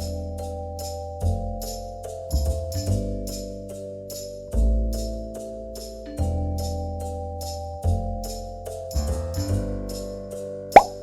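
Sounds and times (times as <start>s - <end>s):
light percussive clicks: 10.8s - 11.0s.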